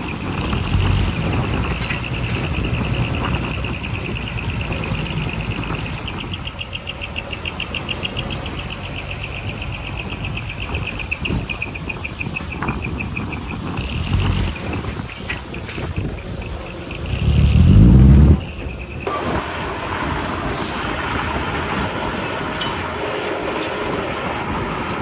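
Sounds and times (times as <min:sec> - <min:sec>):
diesel engine rumbling: 0:00.0 - 0:25.0.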